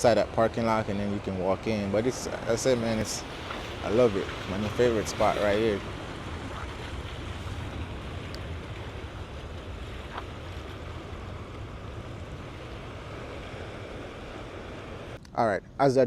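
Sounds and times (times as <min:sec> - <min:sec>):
ocean surf: 0:00.0 - 0:15.2
wind rumble on microphone: 0:00.0 - 0:15.2.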